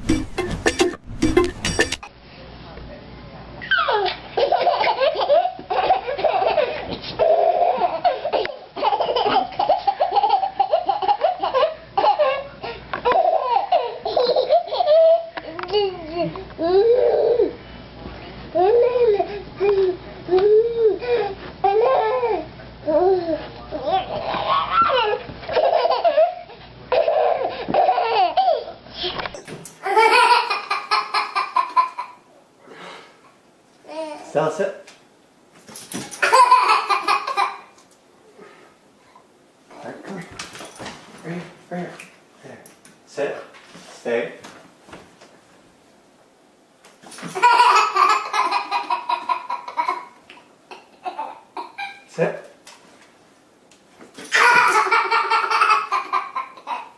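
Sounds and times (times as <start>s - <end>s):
baby laughing: 3.7s - 17.5s, 23.0s - 28.7s, 29.8s - 32.3s, 36.2s - 37.8s, 47.3s - 52.1s, 54.2s - 56.9s.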